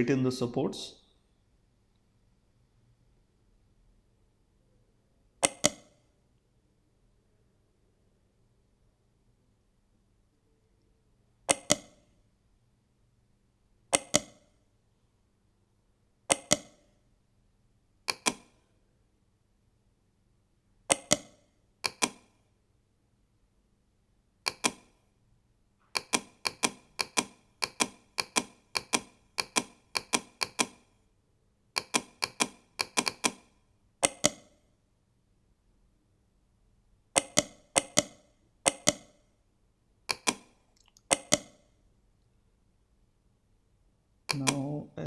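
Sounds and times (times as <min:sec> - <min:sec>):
computer mouse clicking: 0:05.4 - 0:06.1, 0:11.5 - 0:12.2, 0:13.9 - 0:14.6, 0:16.3 - 0:17.0, 0:18.1 - 0:18.7, 0:20.9 - 0:22.4, 0:24.5 - 0:25.0, 0:25.8 - 0:30.9, 0:31.8 - 0:34.7, 0:37.2 - 0:39.3, 0:40.1 - 0:41.8, 0:44.3 - 0:44.6.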